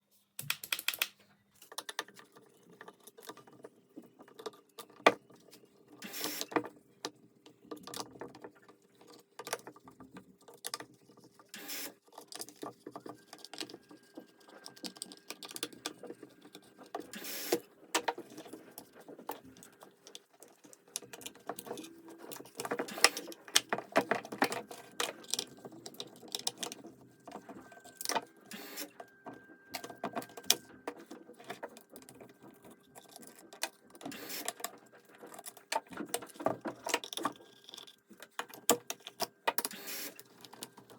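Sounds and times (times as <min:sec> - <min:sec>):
tools clicking and rattling: 0:12.1 - 0:29.0.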